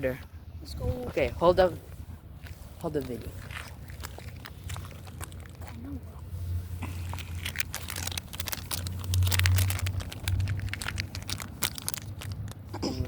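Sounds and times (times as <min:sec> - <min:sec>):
packaging crinkling and rustling: 0:02.8 - 0:06.2, 0:06.8 - 0:12.7
low handling rumble: 0:03.0 - 0:13.0.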